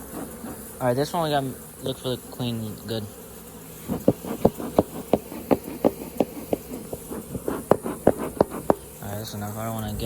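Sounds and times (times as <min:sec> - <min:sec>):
honey bees buzzing: 0:00.0 - 0:10.0
short taps and knocks: 0:03.9 - 0:08.9.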